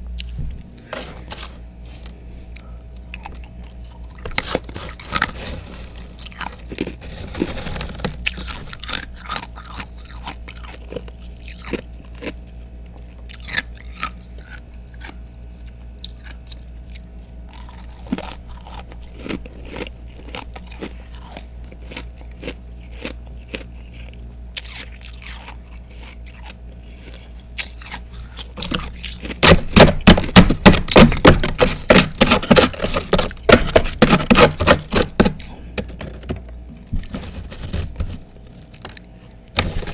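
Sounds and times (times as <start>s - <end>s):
person crunching ice: 0.8s - 2.2s, 3.2s - 11.8s, 17.5s - 36.4s, 37.0s - 39.0s, 39.6s - 39.9s.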